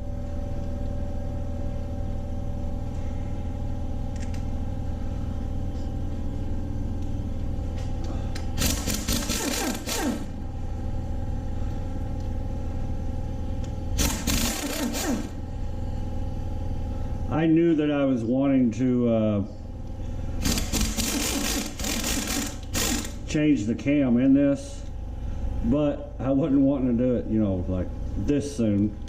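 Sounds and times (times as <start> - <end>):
steady motor hum: 0.0 - 29.0
pneumatic impact wrench bursts: 8.6 - 10.4, 14.0 - 15.4, 20.4 - 23.3.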